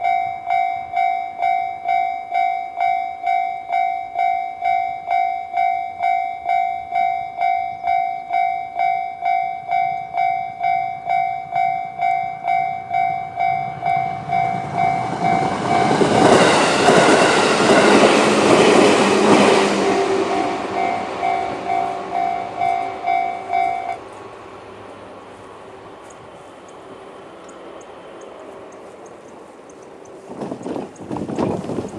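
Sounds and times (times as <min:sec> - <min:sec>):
level crossing warning bell: 0:00.0 - 0:24.2
train passing over rails: 0:00.0 - 0:31.9.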